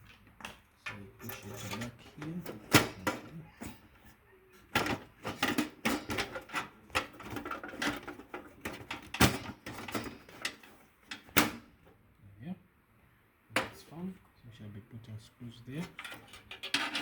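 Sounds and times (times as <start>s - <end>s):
power supply clunking into metal case: 1.4s - 3.9s, 4.7s - 11.7s.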